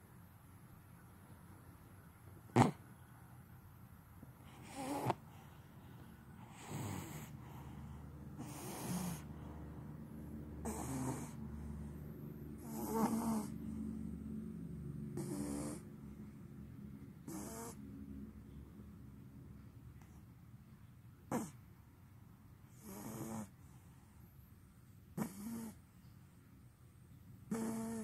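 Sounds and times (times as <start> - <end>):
snoring: 2.5 - 2.8, 4.5 - 5.3, 6.4 - 7.8, 8.4 - 9.3, 10.6 - 11.7, 12.6 - 13.7, 15.2 - 15.9, 17.2 - 17.8, 21.3 - 21.6, 22.7 - 23.6, 25.2 - 25.8, 27.5 - 28.0.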